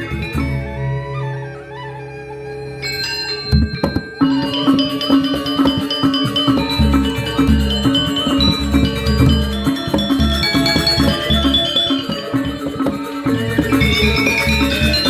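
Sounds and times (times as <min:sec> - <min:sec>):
gamelan ensemble playing: 0:00.0 - 0:15.0
steady drum beats: 0:03.5 - 0:15.0.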